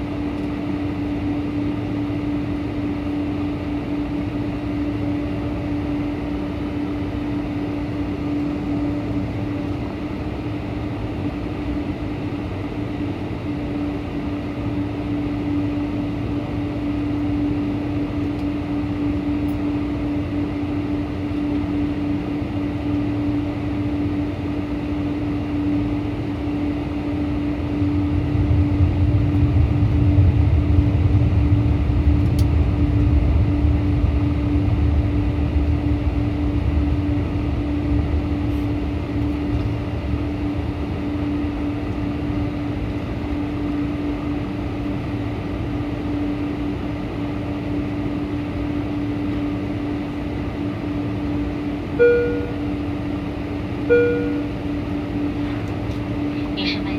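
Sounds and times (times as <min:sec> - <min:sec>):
airliner cabin noise: 0:00.0 - 0:56.9
deep rumble: 0:27.4 - 0:56.9.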